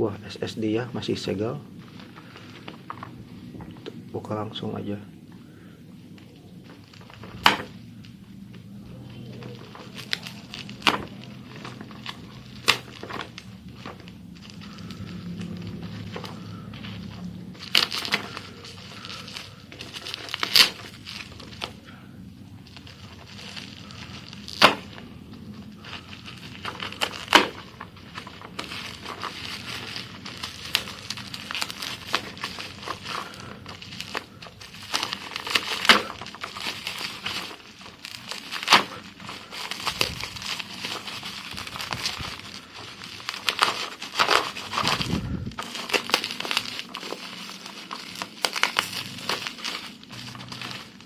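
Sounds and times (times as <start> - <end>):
low steady hum: 0.0 - 51.0
plastic packaging crinkling: 0.0 - 51.0
sharp plastic snaps: 7.0 - 8.2, 23.5 - 25.0.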